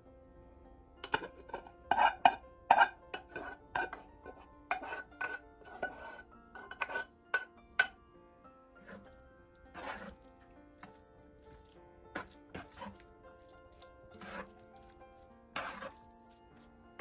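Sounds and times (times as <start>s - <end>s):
soft background music: 0.0s - 17.0s
cutlery clinking on dishes: 1.0s - 8.0s.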